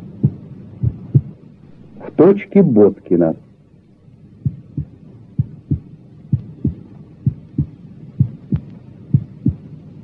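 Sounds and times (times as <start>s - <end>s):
heartbeat lub-dub: 0.0s - 2.2s, 4.4s - 10.0s.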